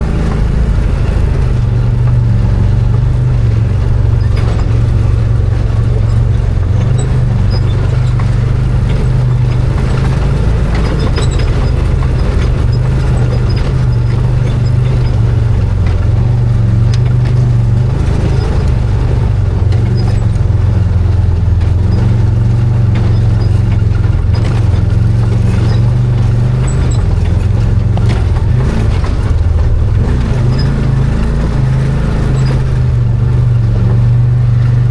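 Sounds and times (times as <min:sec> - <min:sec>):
engine running steadily: 0:00.0 - 0:34.9
knocks and rattles: 0:00.0 - 0:34.9.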